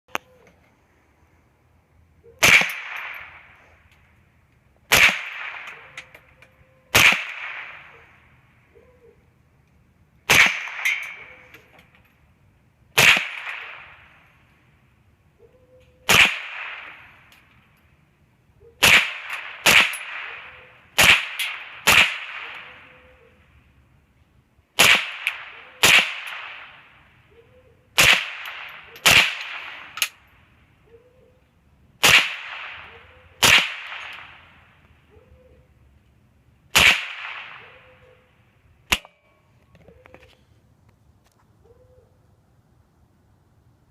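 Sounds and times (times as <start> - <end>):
bullets hitting steel targets: 2.4 - 3.6, 10.3 - 12.0, 18.8 - 22.6, 28.0 - 30.2, 32.0 - 34.6
rifle shots echoing: 2.4 - 3.7, 4.9 - 6.1, 6.9 - 8.3, 10.3 - 11.6, 13.0 - 14.2, 16.1 - 17.3, 18.8 - 23.0, 24.8 - 27.1, 28.0 - 30.3, 32.0 - 34.7, 36.7 - 38.0.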